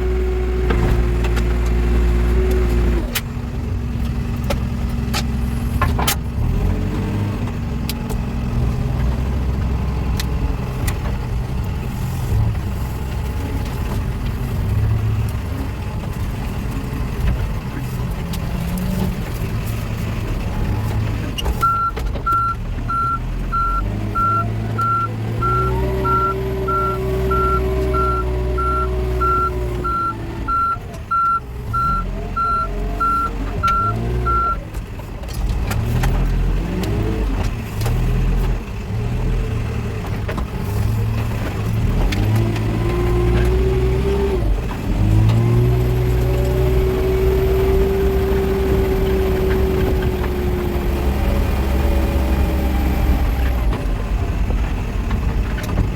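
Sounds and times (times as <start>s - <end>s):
diesel engine revving: 0.0s - 55.9s
reversing alarm beeping: 21.6s - 34.6s.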